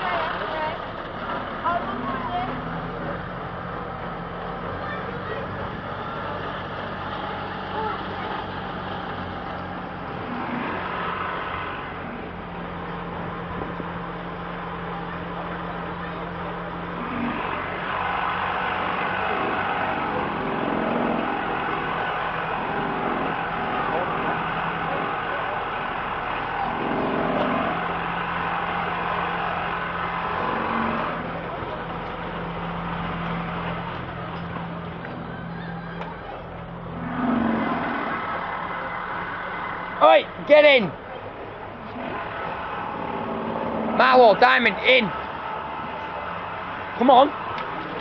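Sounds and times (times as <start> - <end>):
engine running: 0.0 - 48.0
faint voices: 0.0 - 48.0.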